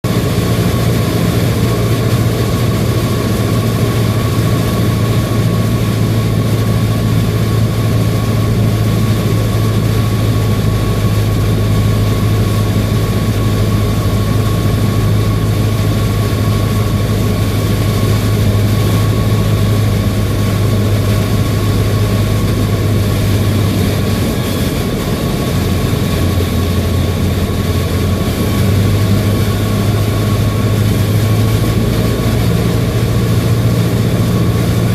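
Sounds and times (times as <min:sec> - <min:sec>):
propeller plane engine running: 0:00.0 - 0:34.9
thin steady whine: 0:00.1 - 0:34.9.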